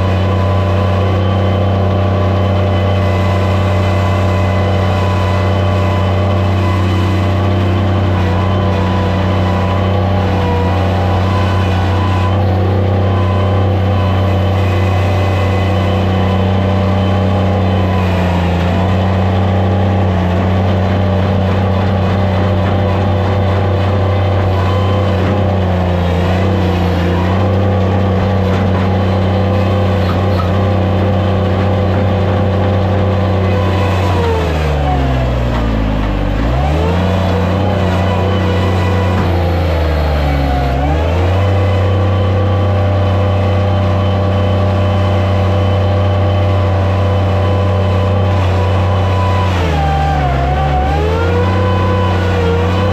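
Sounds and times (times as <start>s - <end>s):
loader engine running: 0.0s - 52.9s.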